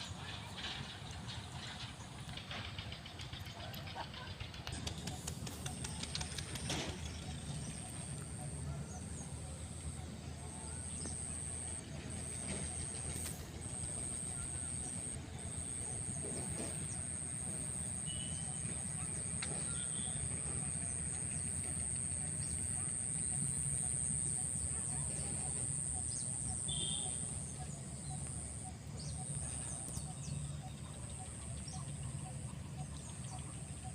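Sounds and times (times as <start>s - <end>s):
bird chirps: 13.8s - 33.7s.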